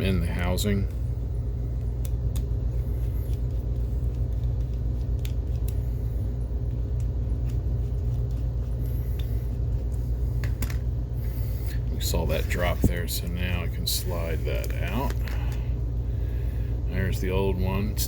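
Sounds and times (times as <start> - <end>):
low background rumble: 0.0 - 18.0.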